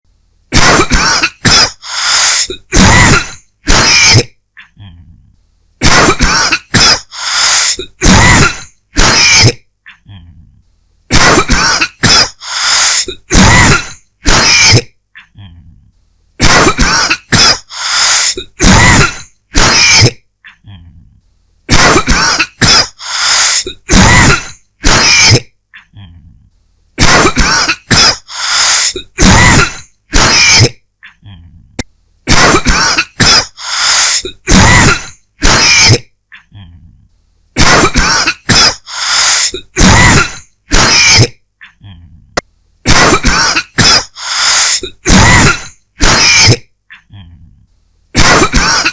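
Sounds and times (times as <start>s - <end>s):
person coughing: 0.5s - 4.7s, 5.8s - 9.7s, 11.1s - 15.0s, 16.4s - 20.2s, 21.7s - 25.5s, 27.0s - 30.8s, 32.3s - 36.1s, 37.6s - 41.4s, 42.9s - 46.7s, 48.2s - 48.9s.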